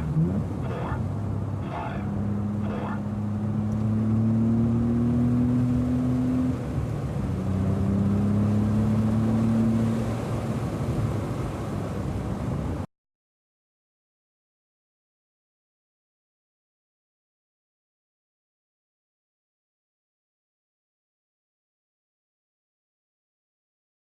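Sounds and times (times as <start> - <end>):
car engine accelerating: 0.0 - 12.5.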